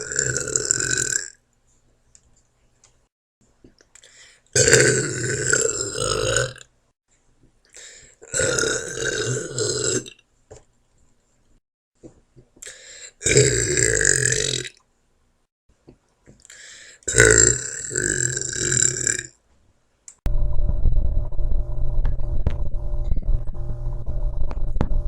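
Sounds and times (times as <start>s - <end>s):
woman burping: 8.3s - 10.1s.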